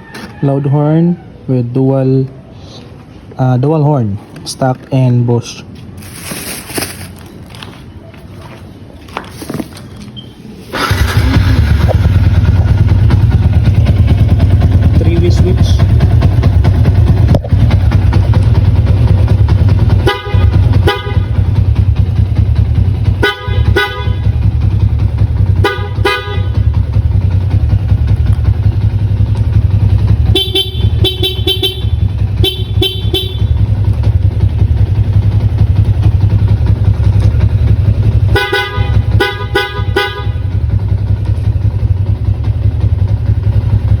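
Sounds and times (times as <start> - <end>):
motorcycle horn beeps: 10.2 - 13.2, 19.8 - 27.7, 28.8 - 34.1, 38.0 - 41.0
motorcycle engine idling: 10.8 - 44.0.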